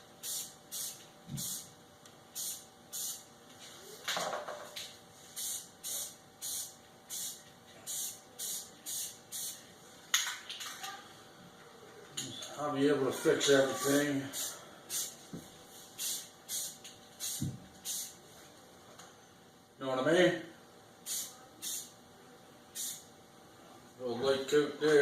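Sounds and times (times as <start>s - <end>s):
spray paint can hissing: 0.2s - 1.7s, 2.4s - 3.3s, 5.4s - 9.6s, 14.4s - 15.2s, 16.0s - 18.2s, 21.0s - 21.9s, 22.8s - 23.0s.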